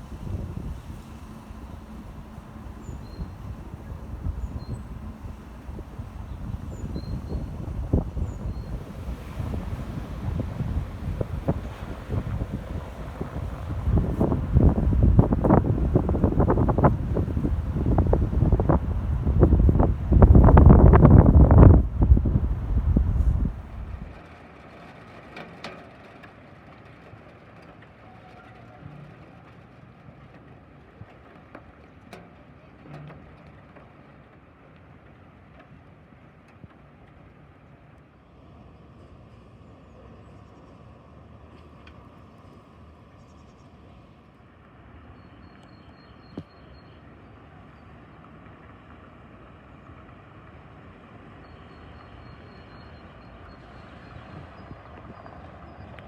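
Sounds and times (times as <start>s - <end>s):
distant traffic rumble: 0.0s - 24.2s, 47.5s - 56.0s.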